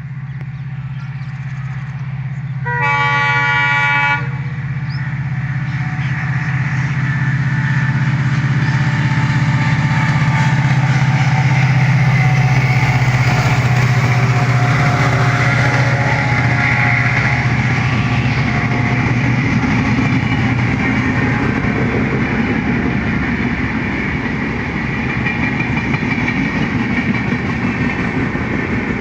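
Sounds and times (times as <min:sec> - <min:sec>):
locomotive engine droning: 0:00.0 - 0:29.0
train horn blast: 0:02.6 - 0:04.5, 0:13.4 - 0:18.8.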